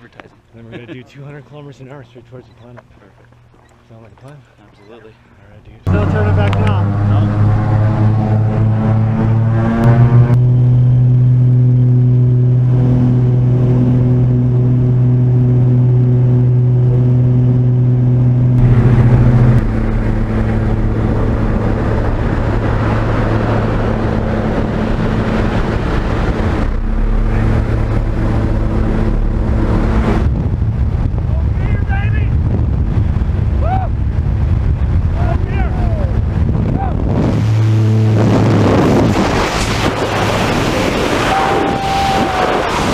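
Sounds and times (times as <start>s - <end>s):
plane engine and propeller droning: 0.0s - 42.9s
wind rushing: 12.6s - 42.9s.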